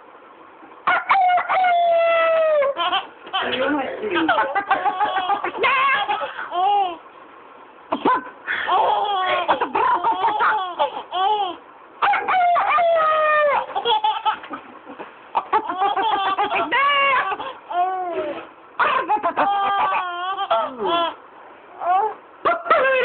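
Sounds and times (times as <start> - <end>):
chicken clucking and crowing: 0.8 - 3.1, 12.0 - 14.5, 18.8 - 20.8
baby laughing: 1.6 - 7.0, 7.9 - 21.2.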